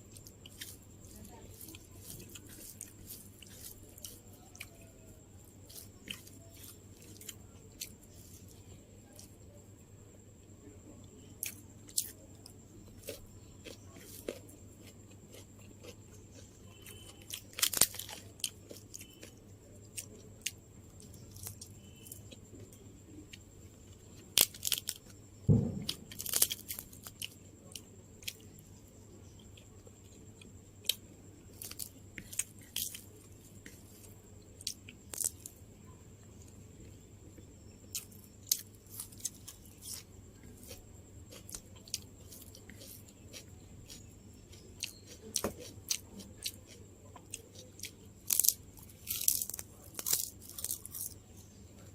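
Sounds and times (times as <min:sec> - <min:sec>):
person chewing crisp food: 0:00.0 - 0:09.4, 0:11.4 - 0:22.5, 0:23.3 - 0:25.1, 0:25.8 - 0:28.6, 0:29.3 - 0:35.5, 0:37.3 - 0:51.3
loud thump: 0:25.5 - 0:26.2.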